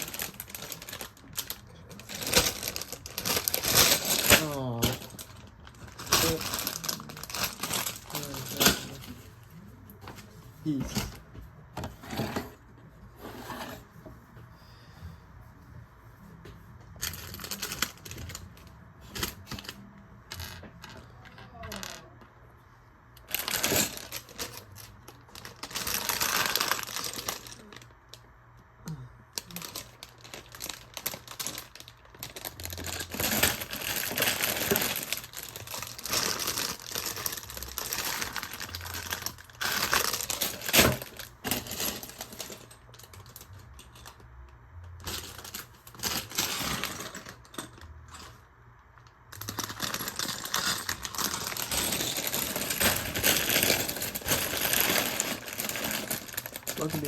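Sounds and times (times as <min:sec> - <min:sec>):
plastic pieces clicking and rattling: 0:49.3 - 0:57.0.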